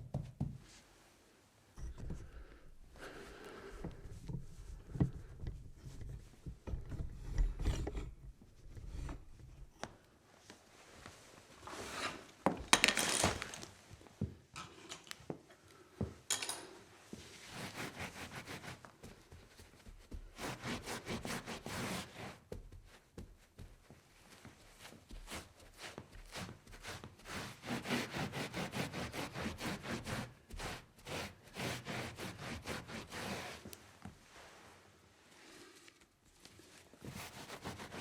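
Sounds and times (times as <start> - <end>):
scraping and rubbing: 11.6 - 13.8, 35.4 - 38.0
swishing wipe: 36.6 - 38.0.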